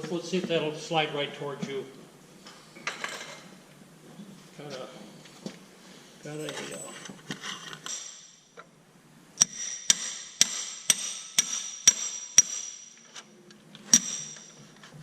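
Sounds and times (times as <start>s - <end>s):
hammer striking metal: 7.8s - 8.6s, 9.4s - 13.1s, 13.9s - 14.6s.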